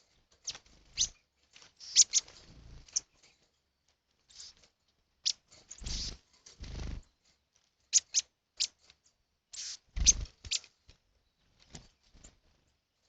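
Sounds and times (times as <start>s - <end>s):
birds chirping: 0.0s - 3.7s, 5.2s - 8.7s, 9.6s - 12.4s.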